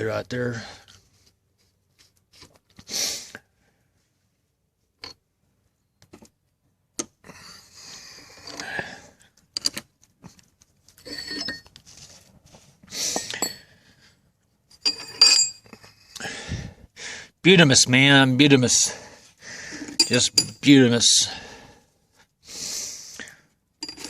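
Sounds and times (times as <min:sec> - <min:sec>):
metal clinks and scraping: 0:08.2 - 0:08.8, 0:09.5 - 0:09.9, 0:10.8 - 0:12.2, 0:13.1 - 0:13.8, 0:14.7 - 0:16.0, 0:19.8 - 0:20.8, 0:23.8 - 0:24.0.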